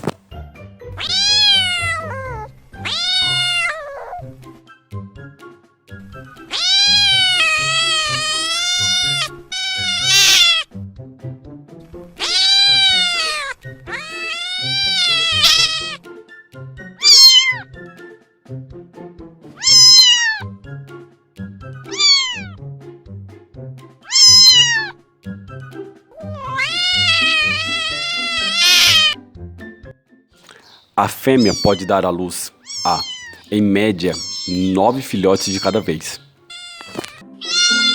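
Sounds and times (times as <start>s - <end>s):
cat meowing: 0.9s - 4.3s, 6.4s - 10.7s, 12.2s - 16.0s, 17.0s - 17.7s, 19.6s - 20.5s, 21.9s - 22.6s, 24.0s - 25.0s, 26.1s - 29.2s, 30.6s - 37.9s.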